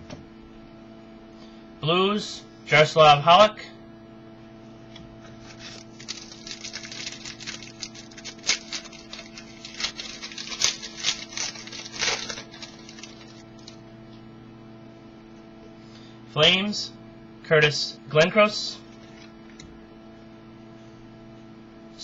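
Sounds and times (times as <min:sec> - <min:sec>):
electrical hum: 0:00.0 - 0:22.0
cards flicking and scraping: 0:05.3 - 0:13.8.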